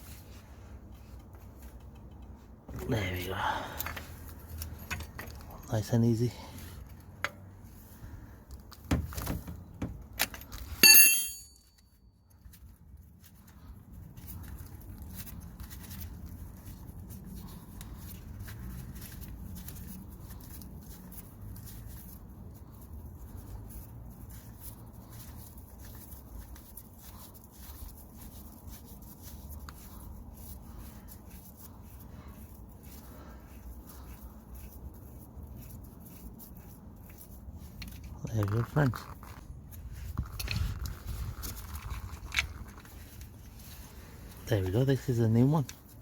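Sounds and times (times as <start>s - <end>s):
metal tools knocking: 10.8s - 11.8s
sharp metallic clink: 10.8s - 12.0s.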